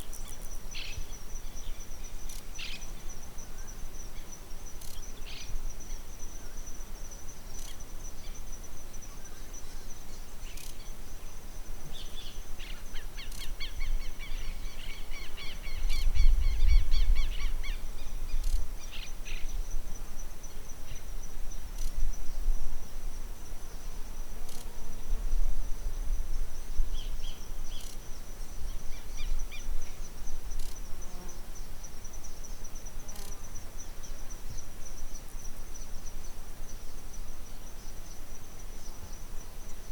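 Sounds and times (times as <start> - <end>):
high-pitched insect trill: 0.0 - 39.9
wind rumbling on microphone: 13.4 - 31.1.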